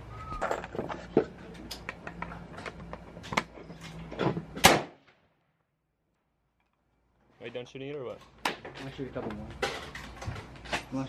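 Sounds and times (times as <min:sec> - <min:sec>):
rifle shots: 0:04.6 - 0:05.2.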